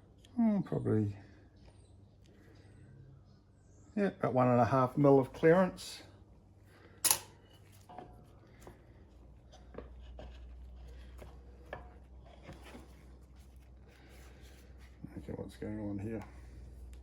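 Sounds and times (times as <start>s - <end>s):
metal parts clicking and tapping: 7.0s - 7.4s.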